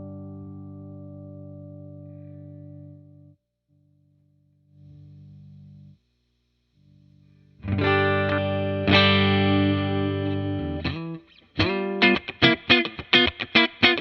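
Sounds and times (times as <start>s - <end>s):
electric guitar chords: 0.0s - 3.4s, 7.6s - 14.0s.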